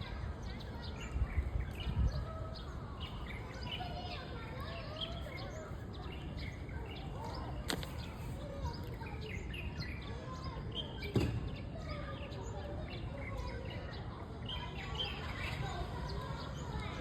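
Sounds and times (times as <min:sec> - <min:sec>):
birds chirping: 0:00.0 - 0:17.0
faint children's voices: 0:00.0 - 0:17.0
outdoor background noise: 0:00.0 - 0:17.0
thump: 0:11.1 - 0:11.6.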